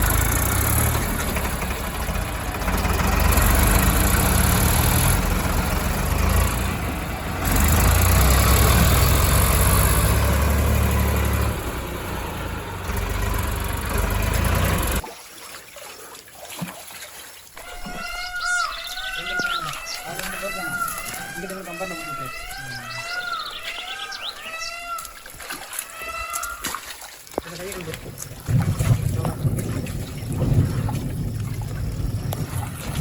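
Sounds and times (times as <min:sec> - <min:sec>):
heavy machinery diesel engines: 0:00.0 - 0:15.0.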